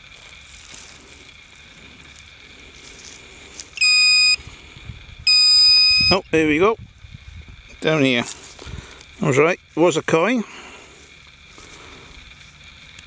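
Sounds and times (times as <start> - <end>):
high-pitched detector beep: 3.8 - 4.4, 5.2 - 6.4.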